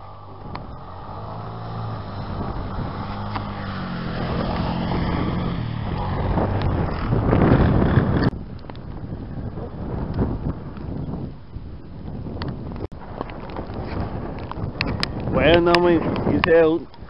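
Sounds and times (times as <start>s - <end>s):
vehicle engine humming: 0.0s - 10.8s
wind noise on microphone: 0.0s - 17.0s.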